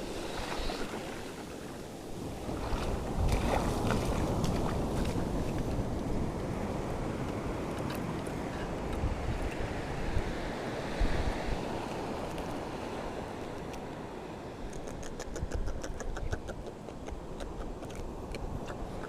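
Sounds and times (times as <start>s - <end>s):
surf on rocky shore: 0.0s - 14.7s
wind buffeting microphone: 2.2s - 11.9s.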